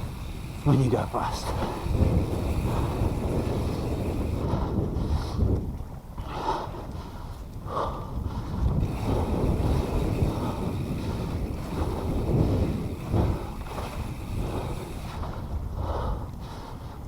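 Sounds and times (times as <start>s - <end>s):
wind buffeting microphone: 0.0s - 17.0s
heavy breathing: 6.2s - 9.4s.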